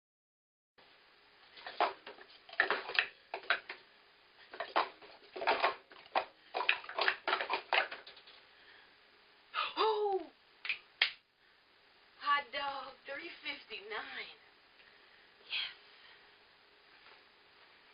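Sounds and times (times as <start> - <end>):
plastic cups clacking: 1.6 - 3.8, 4.4 - 8.4.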